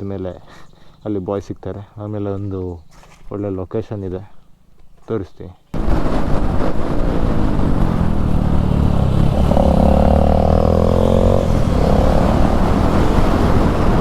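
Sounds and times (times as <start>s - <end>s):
motorcycle engine running: 5.8s - 14.0s
steady higher whine: 5.8s - 14.0s.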